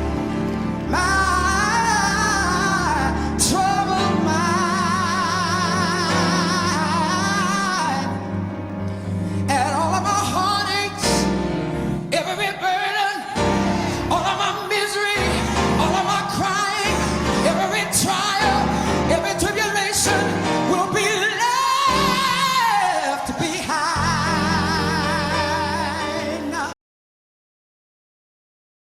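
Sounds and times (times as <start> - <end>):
instrumental accompaniment: 0.0 - 12.2
person singing soul gospel: 0.8 - 26.8.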